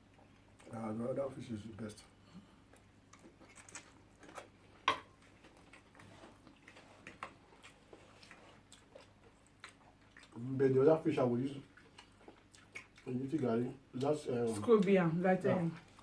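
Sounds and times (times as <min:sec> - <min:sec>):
chewing mouth noises: 0:02.7 - 0:10.5, 0:11.6 - 0:13.5.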